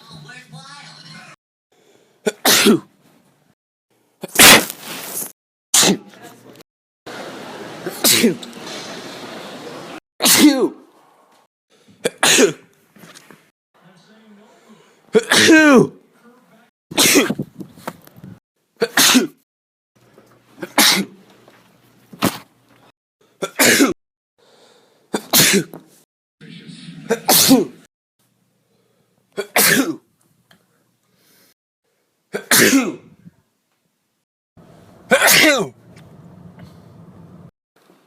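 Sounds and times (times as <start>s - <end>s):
person sneezing: 2.2s - 2.9s, 4.2s - 4.8s, 5.8s - 6.1s, 7.9s - 8.4s, 10.2s - 10.9s, 12.0s - 12.6s, 15.1s - 15.9s, 17.0s - 17.4s, 18.8s - 19.4s, 20.6s - 21.2s, 25.1s - 25.8s, 27.1s - 27.8s, 29.4s - 30.0s, 32.3s - 33.1s, 35.1s - 35.7s.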